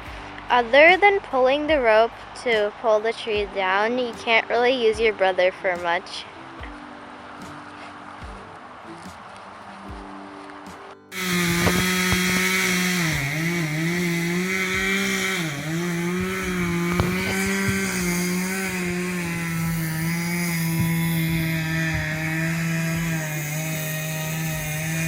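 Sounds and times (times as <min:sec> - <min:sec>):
chainsaw cutting wood: 0:11.1 - 0:25.0.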